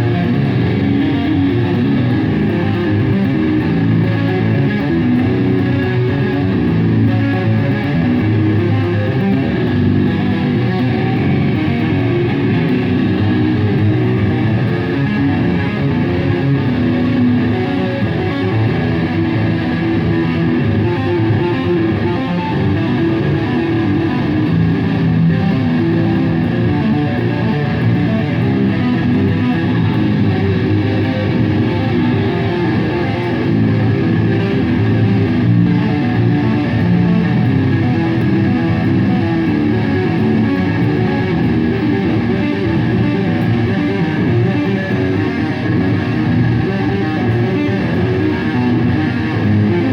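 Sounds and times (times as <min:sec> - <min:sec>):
bass guitar: 0:00.0 - 0:49.9
electric guitar: 0:00.0 - 0:49.9.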